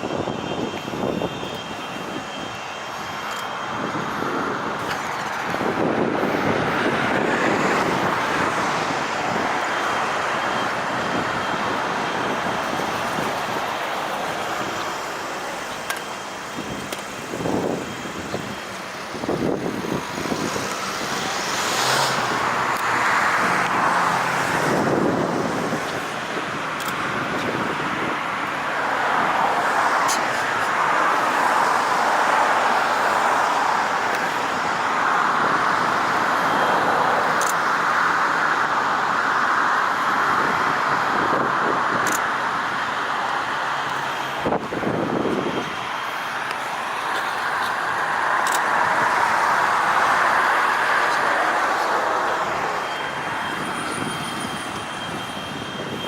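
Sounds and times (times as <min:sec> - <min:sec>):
road traffic passing: 0:00.0 - 0:56.0.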